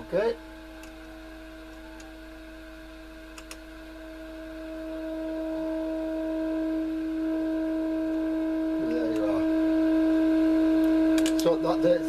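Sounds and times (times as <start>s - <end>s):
test tone from radio speaker: 3.8s - 12.0s.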